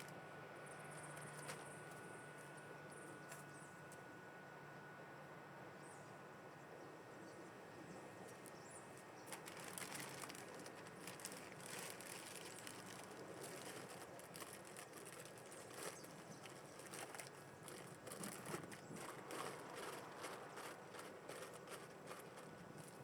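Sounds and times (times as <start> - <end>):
handling clicks and rustles: 0.9 - 2.6, 8.3 - 23.0.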